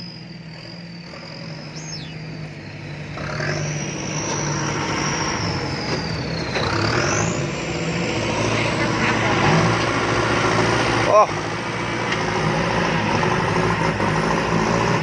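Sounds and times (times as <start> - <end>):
turbo whistle: 0.0 - 7.9
diesel truck engine labouring: 0.0 - 15.0.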